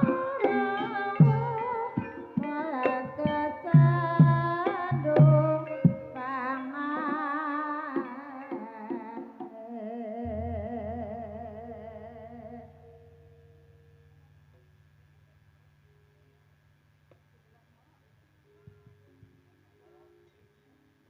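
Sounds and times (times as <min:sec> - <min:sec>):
sharp drum strokes: 0:00.0 - 0:07.4
wavering vocal melody: 0:00.0 - 0:13.9
low steady tone: 0:10.2 - 0:21.0.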